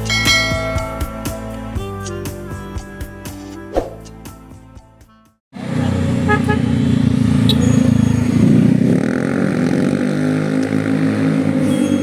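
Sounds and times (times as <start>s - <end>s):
bus engine revving: 5.6s - 12.0s.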